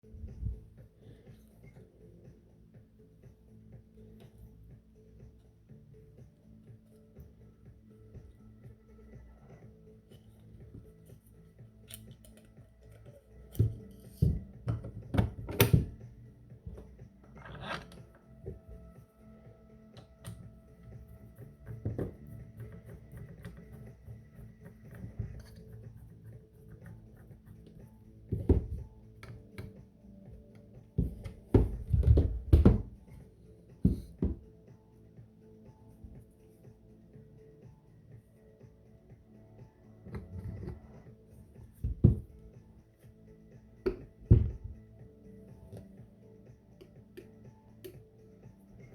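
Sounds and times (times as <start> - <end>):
background music: 0.0 - 48.9
gun parts clicking and knocking: 11.8 - 14.1.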